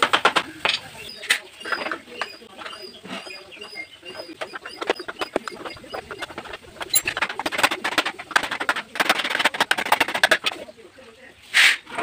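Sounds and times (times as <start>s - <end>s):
rapid clicks and rattles: 4.2s - 10.7s.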